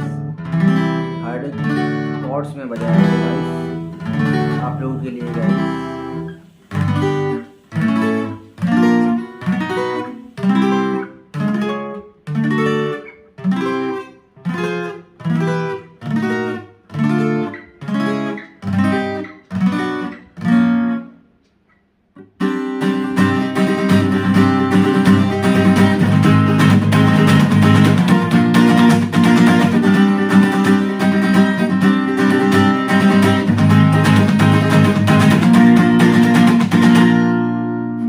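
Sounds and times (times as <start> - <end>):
acoustic guitar strumming: 0.0 - 38.0.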